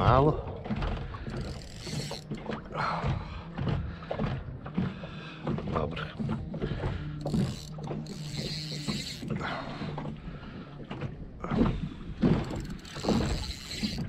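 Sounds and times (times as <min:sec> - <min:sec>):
fishing reel gears whirring: 0:01.2 - 0:02.7, 0:06.6 - 0:10.1, 0:12.2 - 0:14.0.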